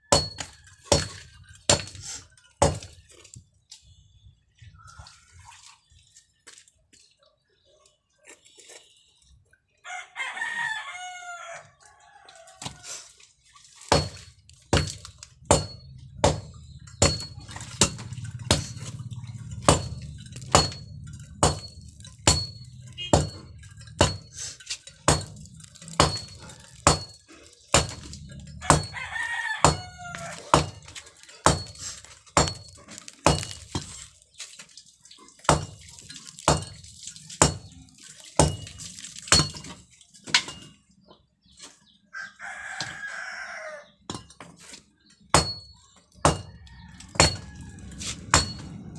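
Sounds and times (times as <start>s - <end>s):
rooster crowing: 9.8s - 12.6s, 28.6s - 30.5s, 42.1s - 43.9s, 46.4s - 48.9s
hammer blows with metallic ring: 14.8s - 24.4s, 25.1s - 29.1s, 45.4s - 48.9s.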